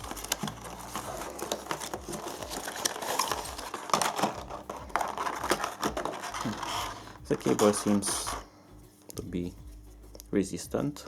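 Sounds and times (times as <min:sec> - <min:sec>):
packaging crinkling and rustling: 0:00.0 - 0:08.5.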